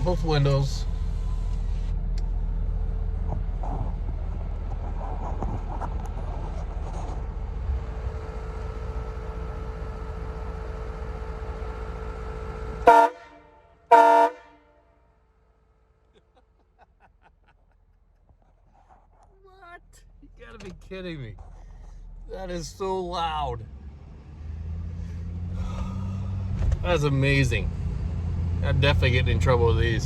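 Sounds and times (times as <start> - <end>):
truck engine idling: 0.0 - 14.7
loud air horn blasts: 12.8 - 14.8.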